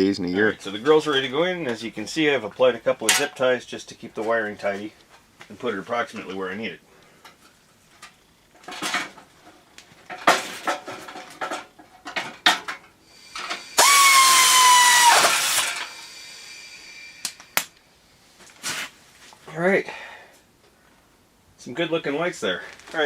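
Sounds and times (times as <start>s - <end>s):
power drill driving fastener: 13.2s - 17.7s.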